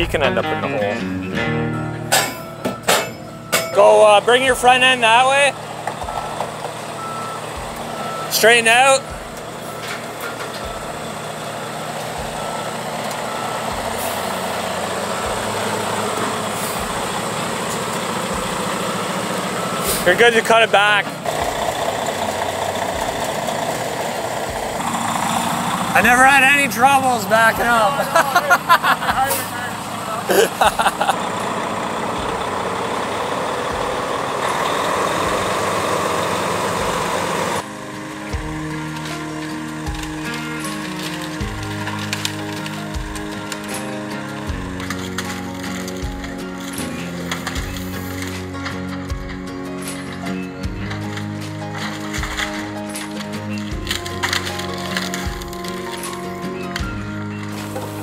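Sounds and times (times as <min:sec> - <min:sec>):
diesel truck engine running: 0:00.0 - 0:58.0
backup alarm beeping: 0:01.8 - 0:15.8, 0:18.4 - 0:21.2.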